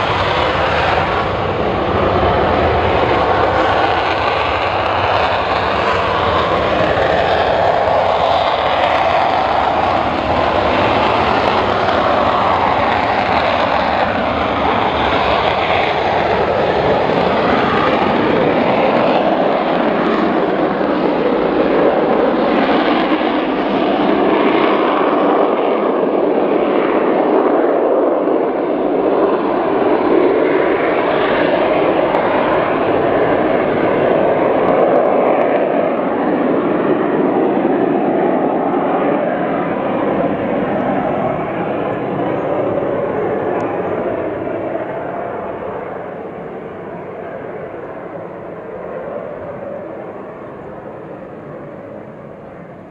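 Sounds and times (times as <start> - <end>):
jet engines roaring: 0.0 - 52.9.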